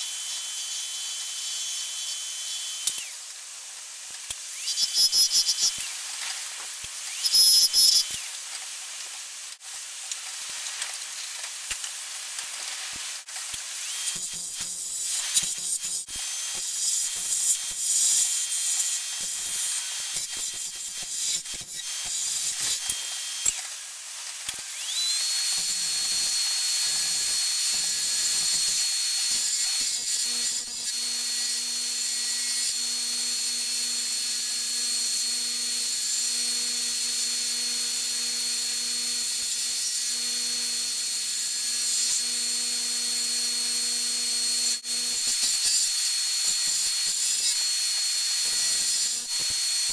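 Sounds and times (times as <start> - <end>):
lathe motor whine: 24.7 - 39.4.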